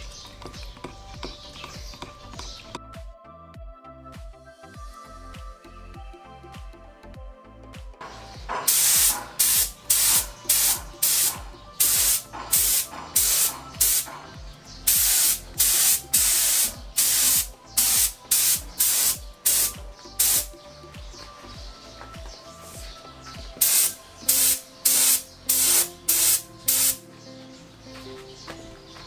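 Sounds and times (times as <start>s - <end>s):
background music: 0.0s - 29.0s
spray gun hissing: 8.5s - 14.2s, 14.9s - 20.5s, 23.6s - 27.0s.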